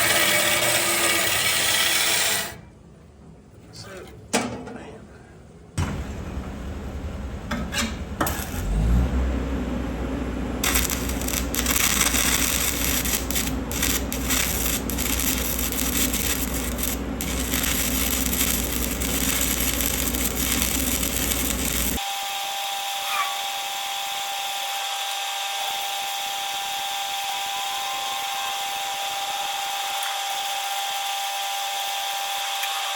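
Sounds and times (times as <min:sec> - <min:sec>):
welding arc crackling and hissing: 0:08.2 - 0:08.8, 0:10.6 - 0:22.0.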